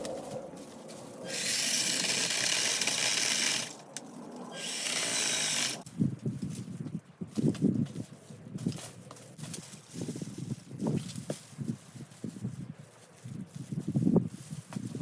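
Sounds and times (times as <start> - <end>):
power tool high-pitched buzz: 1.3 - 3.8, 4.6 - 5.8.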